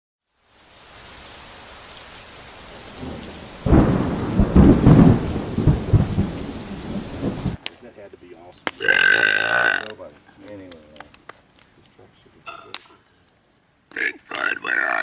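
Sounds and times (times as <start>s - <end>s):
steady rain hiss: 0.2s - 15.0s
thunder rumble: 2.2s - 7.6s.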